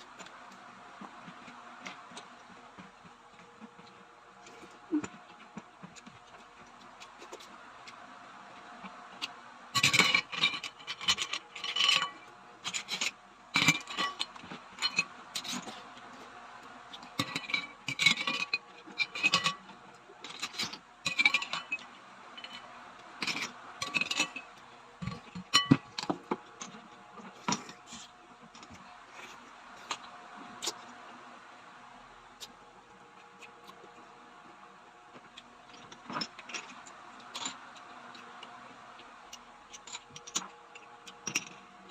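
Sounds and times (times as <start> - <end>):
utensils and shells clinking dishes: 9.7 - 15.9, 16.9 - 28.8.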